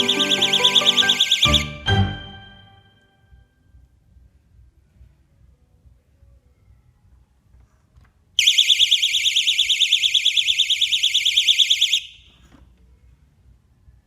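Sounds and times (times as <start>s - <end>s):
burglar alarm siren: 0.0s - 1.9s, 8.4s - 12.3s.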